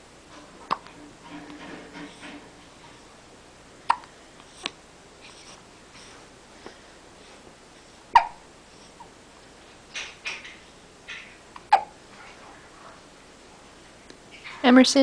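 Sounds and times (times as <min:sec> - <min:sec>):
baby hiccupping: 0:03.9 - 0:04.8, 0:08.2 - 0:08.4, 0:11.7 - 0:12.0.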